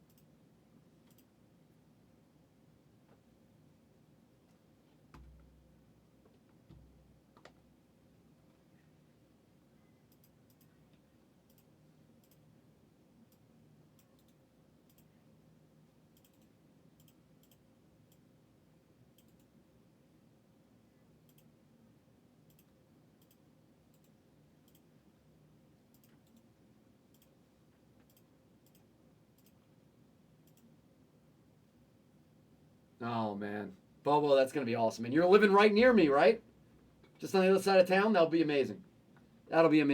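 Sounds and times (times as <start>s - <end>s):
faint room hum: 0.0s - 39.9s.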